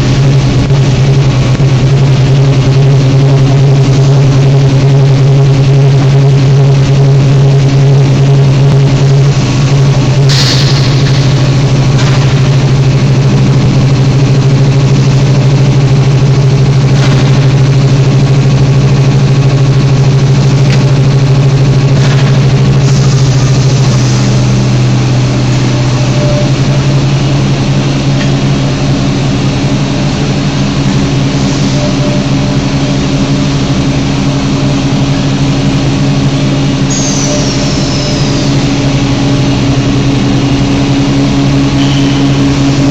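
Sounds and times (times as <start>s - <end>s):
loud machinery hum: 0.0s - 42.9s.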